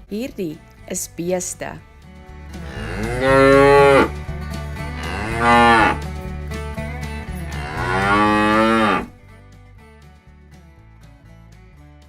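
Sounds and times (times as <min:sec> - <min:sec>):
cattle mooing: 0:02.6 - 0:04.2, 0:05.0 - 0:06.0, 0:07.5 - 0:09.1.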